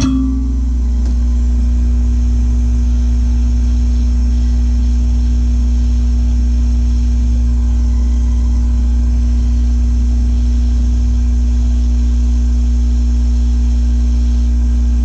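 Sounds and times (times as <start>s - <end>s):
hot-air tool humming: 0.0s - 15.0s.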